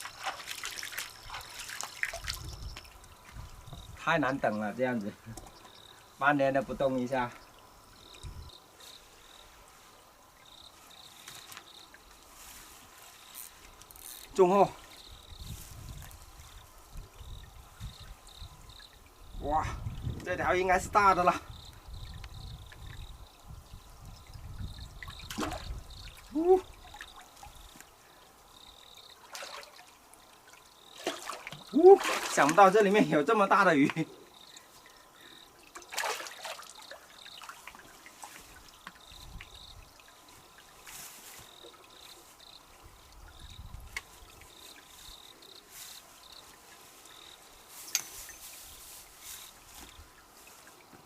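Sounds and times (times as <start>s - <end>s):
water trickling: 0.0s - 51.0s
man exclaiming: 26.3s - 26.7s, 31.7s - 32.1s.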